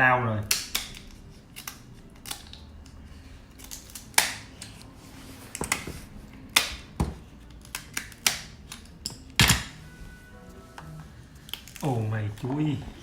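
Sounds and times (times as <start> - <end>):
scissors snapping crab shell: 0.5 - 2.6, 3.6 - 4.5, 7.6 - 8.9, 11.5 - 11.9.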